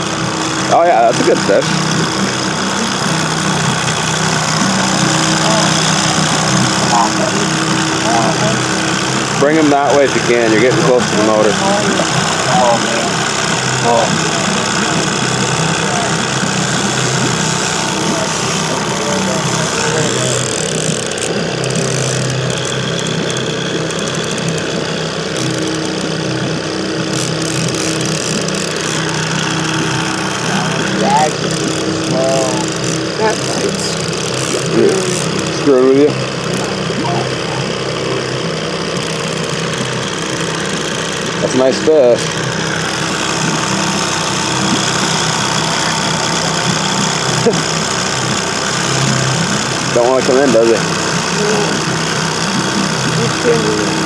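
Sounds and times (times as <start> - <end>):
outboard motor running: 0.0 - 54.0.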